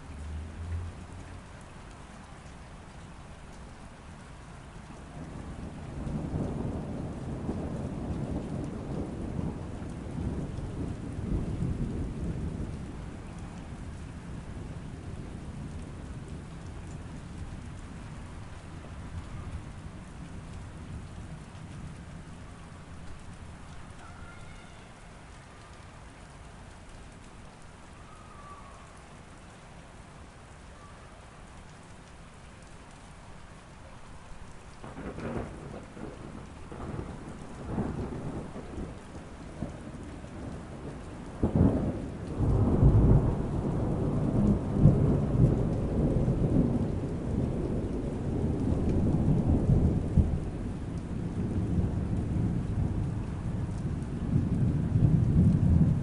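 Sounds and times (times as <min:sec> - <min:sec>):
steady rain: 0:00.0 - 0:56.0
thunder crackling and rumbling: 0:05.0 - 0:24.6, 0:34.8 - 0:56.0.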